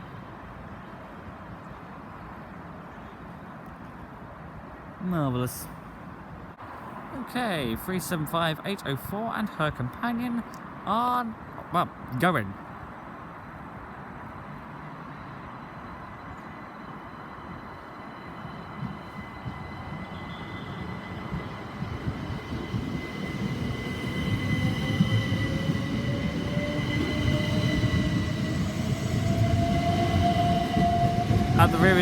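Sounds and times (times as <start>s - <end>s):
train wheel and rail rumble: 12.6s - 32.0s.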